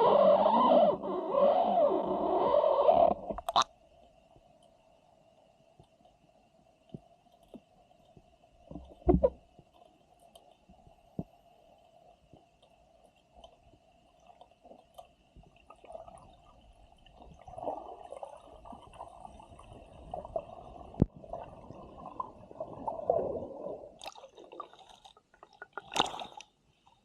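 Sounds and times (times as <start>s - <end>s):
water gurgling and bubbling: 0.0s - 3.6s, 17.2s - 26.4s
faint steady hum: 0.0s - 27.0s.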